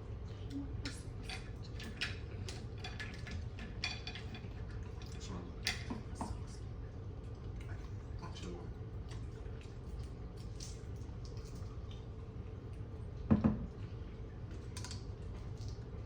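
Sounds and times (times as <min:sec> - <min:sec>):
steady low hum: 0:00.0 - 0:16.0
wet eating clicks and squelches: 0:00.2 - 0:16.0.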